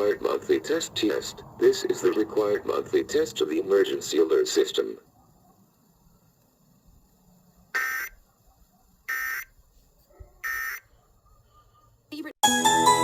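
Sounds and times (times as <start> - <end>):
harsh buzzing data bursts: 7.7 - 8.1.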